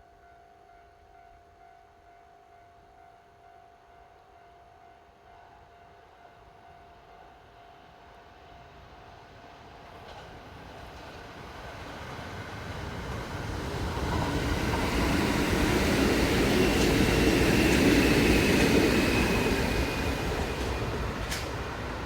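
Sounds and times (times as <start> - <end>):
electric train passing: 7.8 - 22.0.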